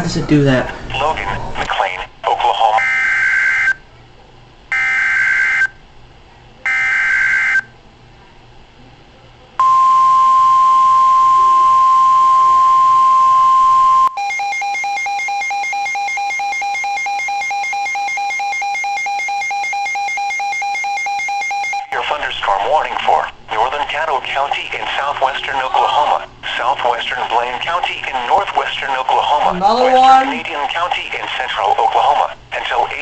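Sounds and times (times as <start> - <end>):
steady warning alarm tone: 2.8 - 3.8, 4.7 - 5.8, 6.7 - 7.7, 9.6 - 22.0.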